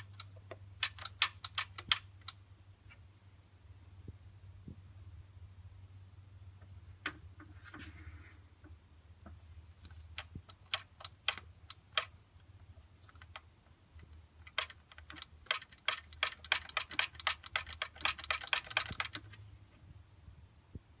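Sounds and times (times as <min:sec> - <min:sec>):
sharp clicks and taps: 0:00.0 - 0:02.4, 0:09.2 - 0:12.2, 0:13.0 - 0:19.4
faint low hum: 0:00.0 - 0:21.0.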